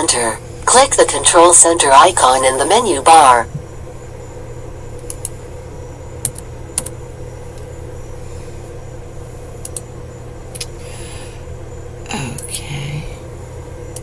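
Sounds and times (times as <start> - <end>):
low electrical hum: 0.0 - 14.0
sharp short clicks: 10.5 - 10.8.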